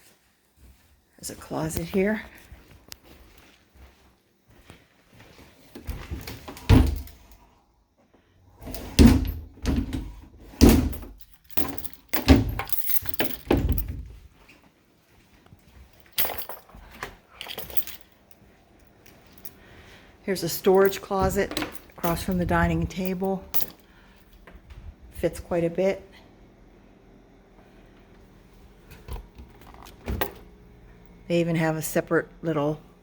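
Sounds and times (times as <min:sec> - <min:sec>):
closet doors thumping and rattling: 0:05.9 - 0:07.2, 0:08.7 - 0:14.2.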